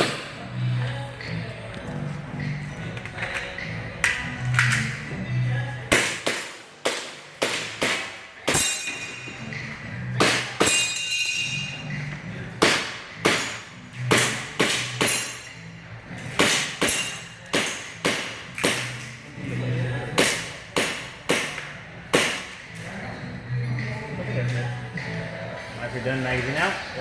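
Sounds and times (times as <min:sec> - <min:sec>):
high ringing: 0:08.5 - 0:09.8, 0:10.6 - 0:12.1.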